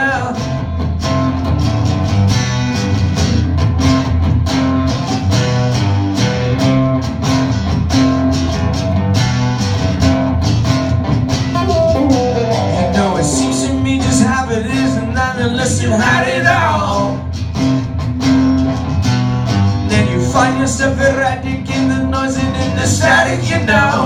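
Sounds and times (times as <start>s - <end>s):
live rock band playing: 0.0s - 24.0s.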